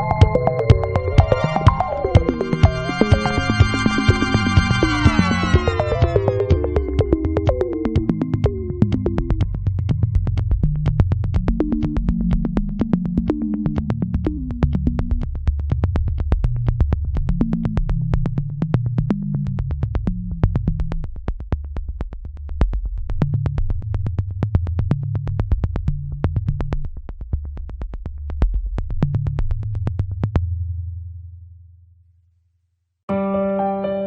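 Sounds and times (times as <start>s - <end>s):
electronic music with sharp beat: 0.0s - 15.2s
low bass line: 0.0s - 30.6s.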